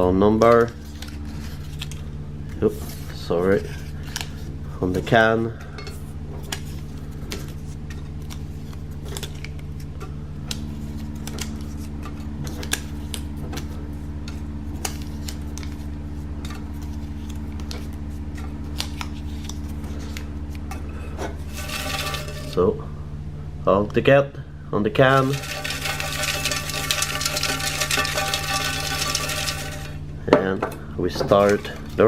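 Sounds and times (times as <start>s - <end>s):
low hum: 0.0s - 32.0s
paper tickets clicking into metal can: 21.6s - 22.6s, 25.1s - 30.0s.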